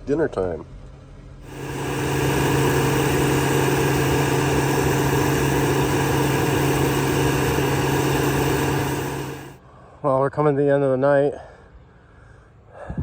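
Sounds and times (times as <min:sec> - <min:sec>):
large engine running steadily: 0:01.4 - 0:09.6.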